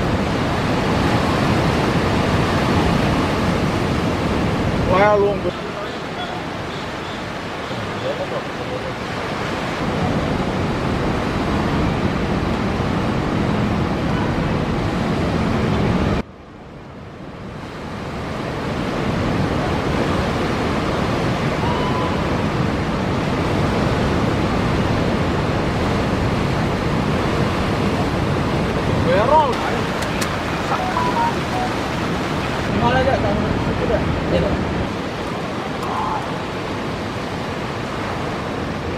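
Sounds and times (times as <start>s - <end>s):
ocean surf breaking: 0.0s - 16.2s, 16.8s - 38.9s.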